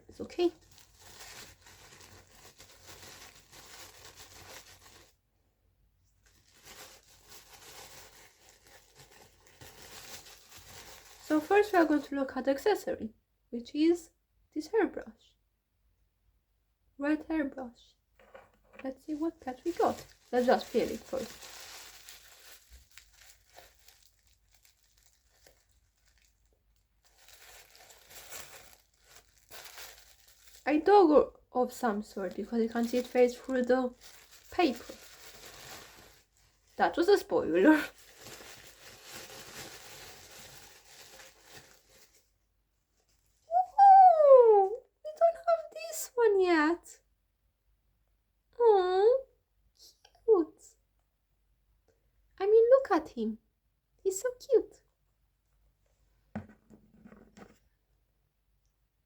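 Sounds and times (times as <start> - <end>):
packaging tearing and crinkling: 0.6 - 5.2, 6.2 - 11.7, 19.5 - 30.7, 32.3 - 36.5, 37.9 - 42.3.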